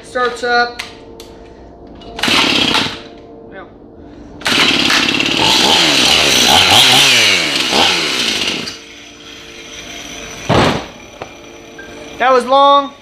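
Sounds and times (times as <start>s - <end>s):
chainsaw revving: 2.2s - 2.9s, 4.4s - 10.4s.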